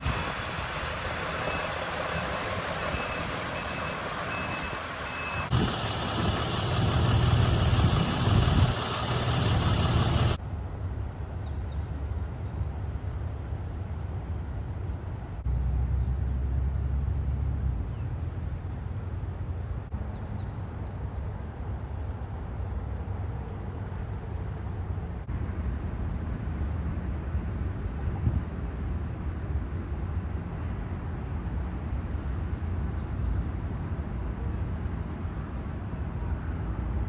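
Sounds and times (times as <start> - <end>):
reversing alarm beeping: 0.0 - 10.4
heavy engine rumbling: 0.0 - 10.7
outdoor noise: 0.0 - 37.0.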